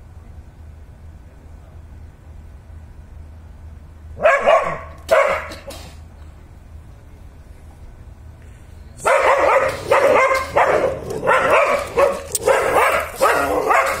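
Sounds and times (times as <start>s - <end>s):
dog barking: 4.2s - 5.7s, 9.0s - 14.0s.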